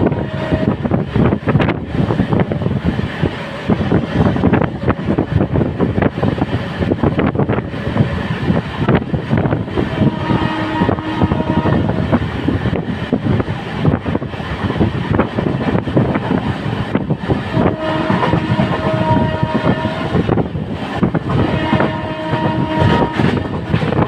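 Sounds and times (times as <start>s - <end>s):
train running noise: 0.0s - 24.0s
wind on microphone: 0.0s - 24.0s
train wheels clattering on rails: 10.9s - 24.0s.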